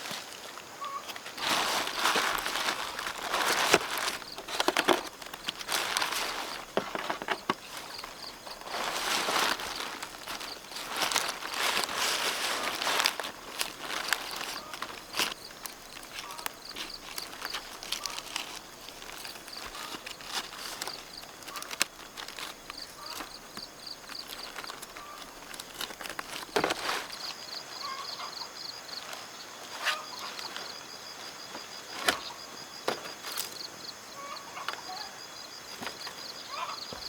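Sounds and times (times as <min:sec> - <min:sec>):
knocks and rustles: 0:01.4 - 0:15.4.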